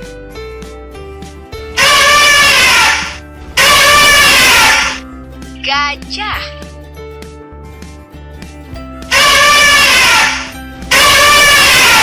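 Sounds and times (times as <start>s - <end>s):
quiet background music: 0.0s - 12.0s
elephant trumpeting: 1.8s - 5.0s, 9.1s - 12.0s.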